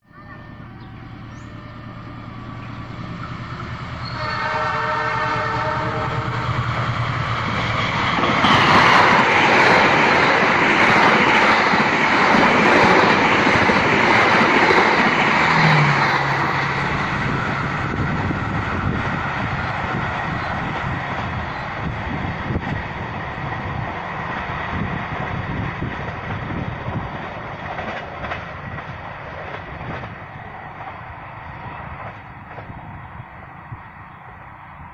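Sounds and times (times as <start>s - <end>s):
diesel locomotive engine: 0.0s - 34.9s
train wheel and rail noise: 0.0s - 34.9s
train horn: 4.0s - 6.6s.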